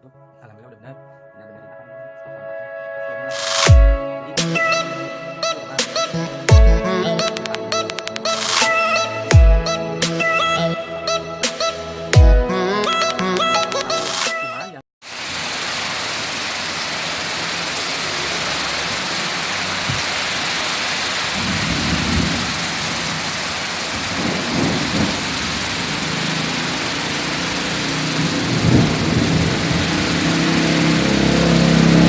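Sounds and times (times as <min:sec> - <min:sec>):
heavy rain pouring: 0:15.0 - 0:32.0.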